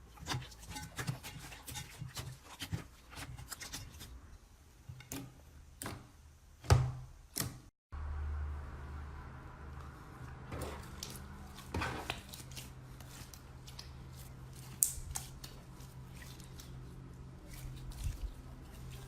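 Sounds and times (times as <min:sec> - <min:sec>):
slime squelching by hand: 0:00.0 - 0:04.2, 0:09.8 - 0:19.0.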